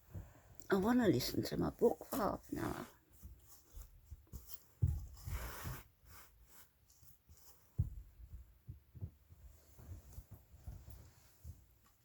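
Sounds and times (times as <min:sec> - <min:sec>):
scratchy rustling: 0:01.2 - 0:08.2.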